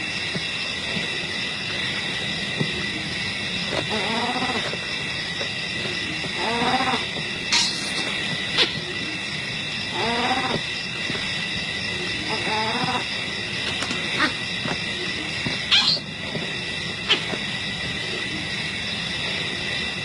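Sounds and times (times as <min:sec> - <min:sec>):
insect chorus: 0:00.0 - 0:20.0
wavering animal calls: 0:02.7 - 0:05.1, 0:05.7 - 0:07.4, 0:08.5 - 0:11.2, 0:11.8 - 0:16.1, 0:17.0 - 0:17.4
sharp chirps: 0:15.7 - 0:16.1.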